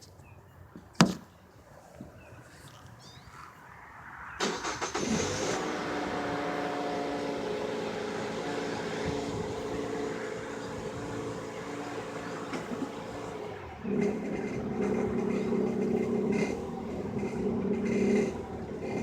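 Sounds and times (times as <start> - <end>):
car engine cranking and idling: 4.4 - 19.0
steady tones from belt drive: 4.4 - 19.0.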